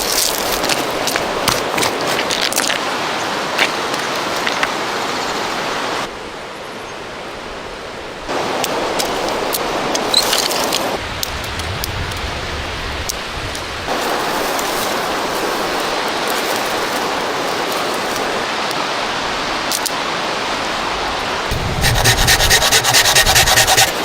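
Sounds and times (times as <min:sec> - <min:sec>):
river rushing: 0:00.0 - 0:11.2, 0:12.4 - 0:24.0.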